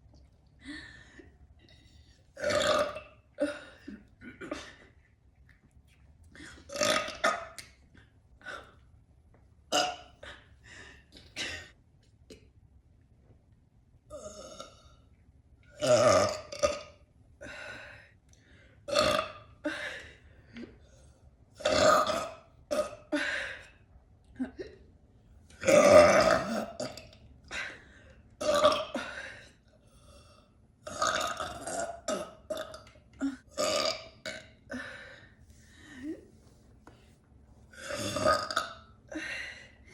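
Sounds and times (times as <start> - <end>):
person burping: 2.4 - 4.8, 6.7 - 7.6, 9.7 - 10.1, 15.8 - 17.0, 18.9 - 19.4, 21.6 - 23.0, 25.6 - 27.2, 28.4 - 29.1, 30.8 - 34.8, 37.8 - 38.9.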